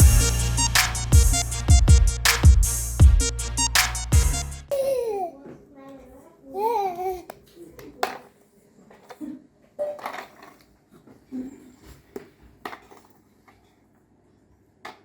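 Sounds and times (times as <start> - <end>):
toy car knocking and clattering: 12.6 - 13.2.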